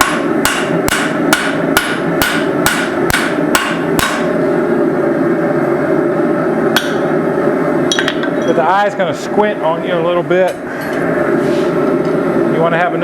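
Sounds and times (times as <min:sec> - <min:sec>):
hammer ringing on anvil: 0:00.0 - 0:04.3
steady background hum: 0:00.0 - 0:13.0.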